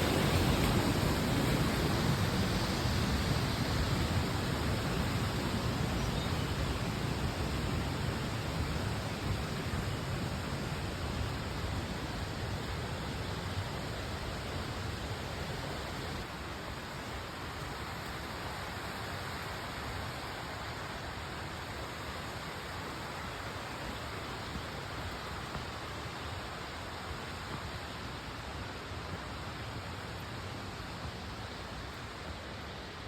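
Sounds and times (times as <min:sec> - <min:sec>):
waterfall rushing: 0:00.0 - 0:16.2.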